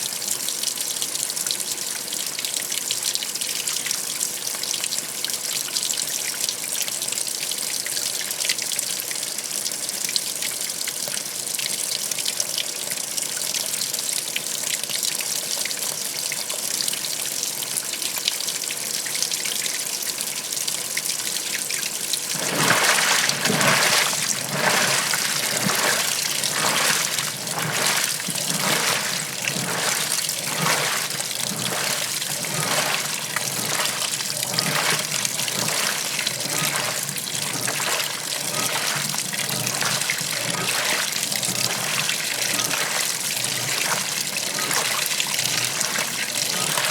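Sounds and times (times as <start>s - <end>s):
water running into washing machine: 21.2s - 46.9s
water sloshing: 22.3s - 46.9s.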